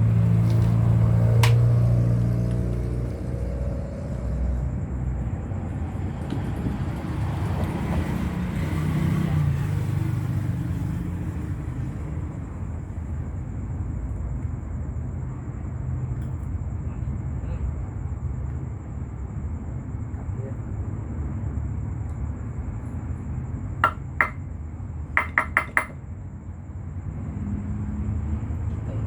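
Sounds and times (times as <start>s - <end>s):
vehicle engine rumbling: 0.0s - 20.0s.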